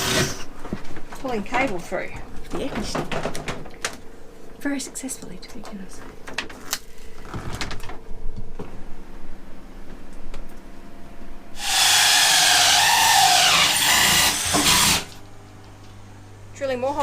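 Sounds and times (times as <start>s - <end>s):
power drill cutting through hull: 0.0s - 0.4s, 11.6s - 15.2s.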